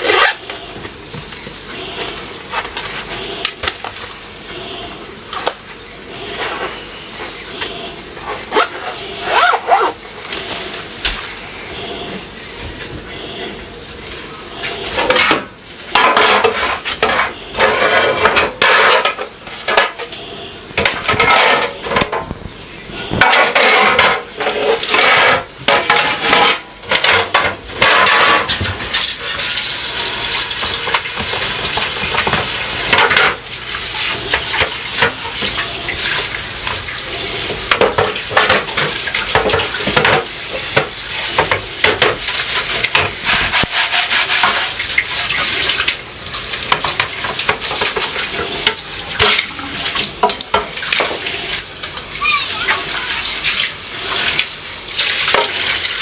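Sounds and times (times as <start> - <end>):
shelves clattering in a sink: 0.0 - 56.0
tap running: 26.9 - 52.0.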